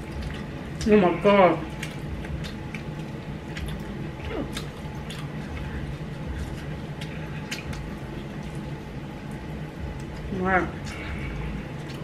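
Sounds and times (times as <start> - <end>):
chewing and biting chicken wings: 1.6 - 10.3.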